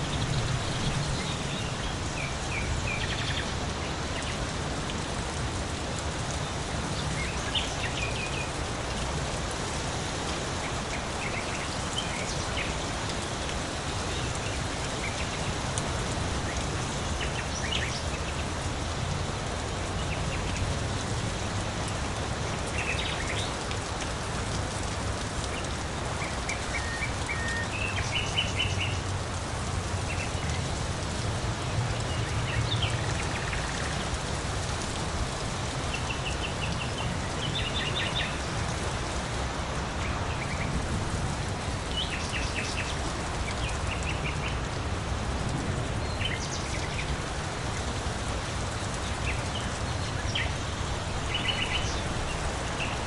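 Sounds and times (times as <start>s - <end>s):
songbirds chirping: 0.0s - 24.2s, 25.2s - 44.8s, 45.5s - 53.0s
steady rain falling: 0.0s - 53.0s.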